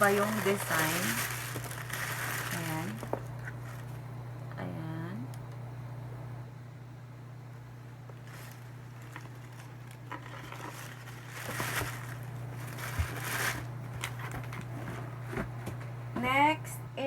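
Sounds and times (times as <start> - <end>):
packaging rustling and crinkling: 0.0 - 4.0, 8.1 - 15.6.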